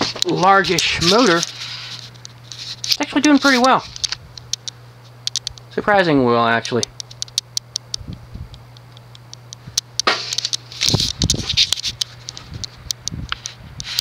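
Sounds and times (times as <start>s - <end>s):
ceiling fan motor hum: 0.0s - 14.0s
light ticks: 4.0s - 5.7s, 6.6s - 14.0s.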